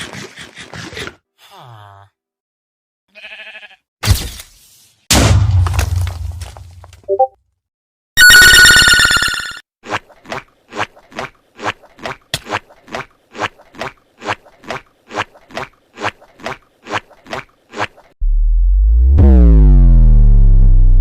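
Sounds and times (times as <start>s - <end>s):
bright ringing tone: 8.2s - 9.6s.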